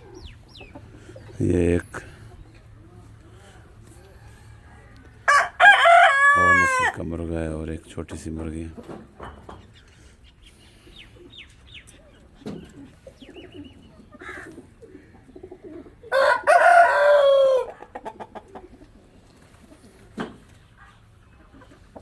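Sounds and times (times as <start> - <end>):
hens clucking softly: 0.0 - 5.2, 8.8 - 22.0
rooster crowing: 4.2 - 7.0, 16.1 - 17.8.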